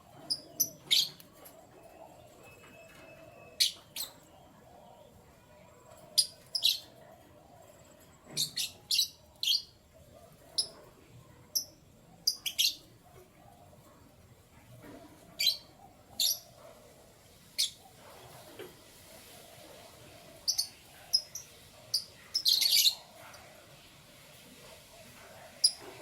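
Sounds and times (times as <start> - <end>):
canary chirping: 0.2 - 4.3, 6.2 - 7.0, 11.6 - 12.9, 15.4 - 16.6, 20.4 - 23.1, 25.6 - 26.0.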